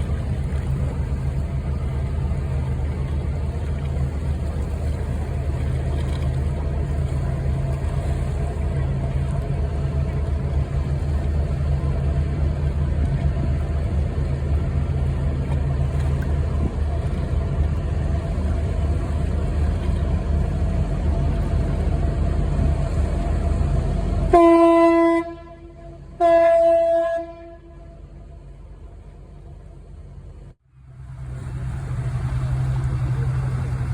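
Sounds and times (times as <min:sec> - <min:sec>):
low engine and wind rumble: 0:00.0 - 0:33.9
ship's horn blasts: 0:22.2 - 0:28.5.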